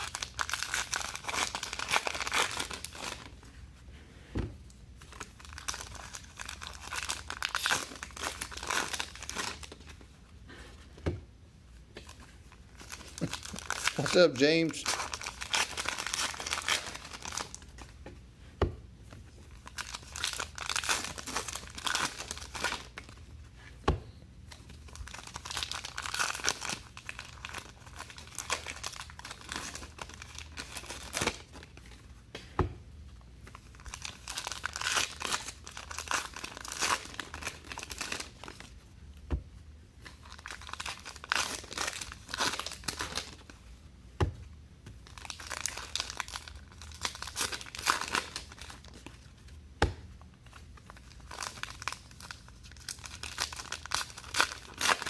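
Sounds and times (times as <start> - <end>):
wrappers tearing and crinkling: 0.0 - 3.4, 5.1 - 9.8, 12.1 - 17.8, 19.6 - 23.2, 24.5 - 31.8, 33.5 - 38.8, 40.1 - 43.6, 45.0 - 49.3, 50.8 - 55.0.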